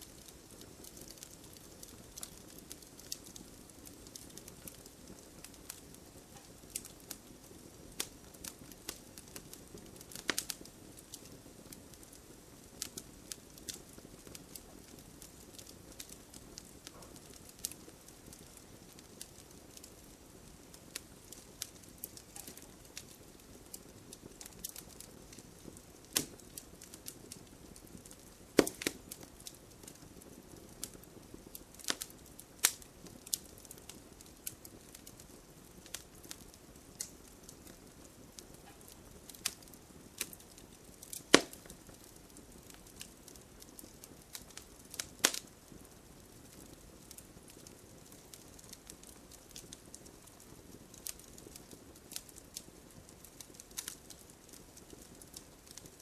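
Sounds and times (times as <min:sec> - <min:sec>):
campfire hissing: 0:00.0 - 0:56.0
campfire popping: 0:00.0 - 0:56.0
loud fire snaps: 0:00.0 - 0:56.0.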